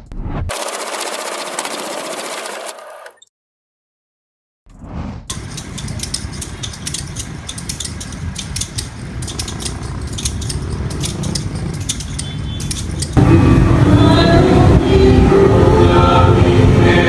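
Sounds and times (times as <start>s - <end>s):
mechanical clicking and rattling: 5.3s - 13.2s.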